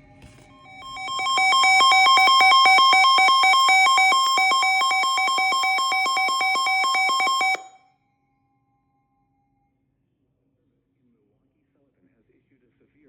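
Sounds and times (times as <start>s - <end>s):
two-pitch trilling alarm tone: 0.6s - 7.8s.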